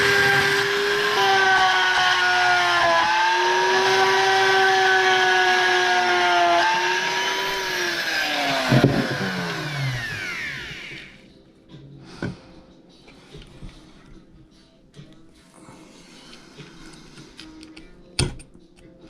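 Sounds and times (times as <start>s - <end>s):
rotary tool whining: 0.0s - 11.2s.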